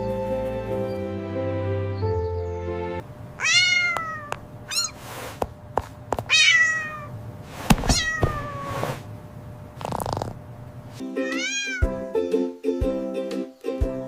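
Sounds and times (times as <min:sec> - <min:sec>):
cat meowing: 0:03.4 - 0:05.1, 0:06.2 - 0:07.1, 0:07.7 - 0:09.0, 0:11.2 - 0:12.0.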